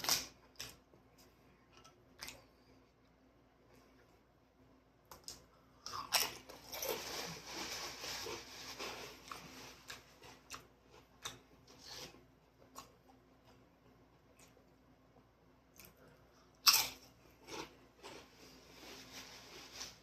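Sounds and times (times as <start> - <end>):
chip crunching: 15.7 - 18.3.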